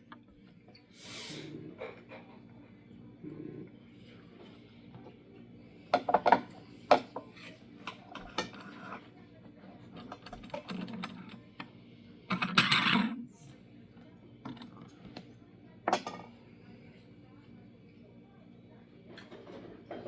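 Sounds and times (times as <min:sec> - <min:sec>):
light metallic clicks and clatters: 0:09.9 - 0:11.5.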